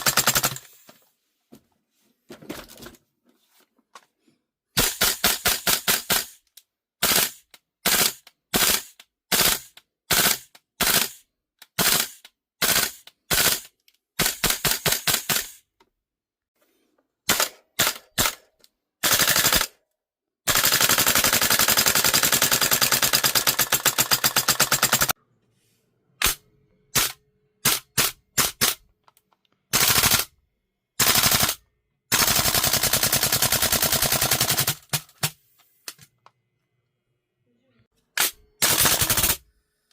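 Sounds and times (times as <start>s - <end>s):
airsoft rifle firing: 26.2s - 28.8s, 38.2s - 39.4s.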